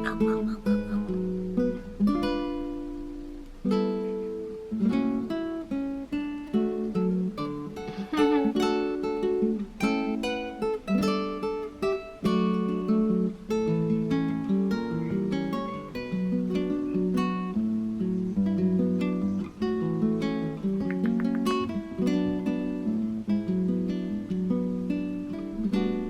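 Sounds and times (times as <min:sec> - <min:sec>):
acoustic guitar music: 0:00.0 - 0:26.0.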